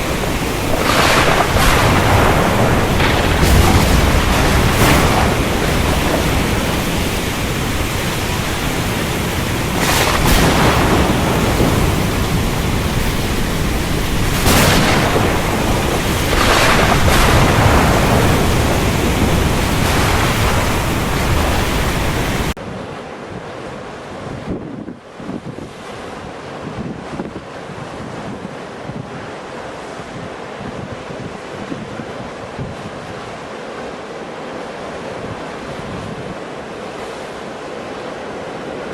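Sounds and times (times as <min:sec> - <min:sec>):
strong wind on microphone: 0:00.0 - 0:33.5, 0:35.0 - 0:36.6.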